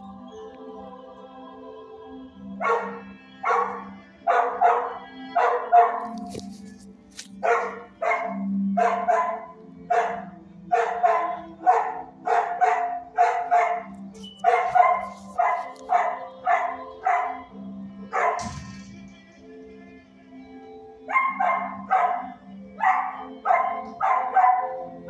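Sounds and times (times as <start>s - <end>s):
dog barking: 2.6s - 6.6s, 7.4s - 18.6s, 21.1s - 25.0s.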